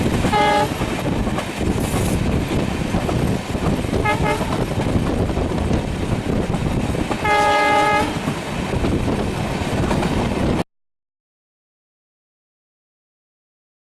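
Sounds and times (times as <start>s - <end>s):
train wheels rumbling on rails: 0.0s - 10.6s
train horn blast: 0.3s - 0.8s, 4.0s - 4.6s, 7.2s - 8.2s.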